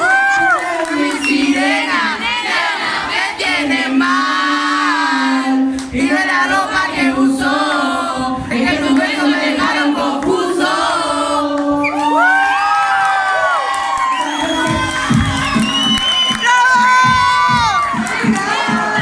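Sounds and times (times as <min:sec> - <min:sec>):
crowd singing together: 0:00.0 - 0:12.3, 0:17.9 - 0:19.0
crowd shouting: 0:12.0 - 0:19.0.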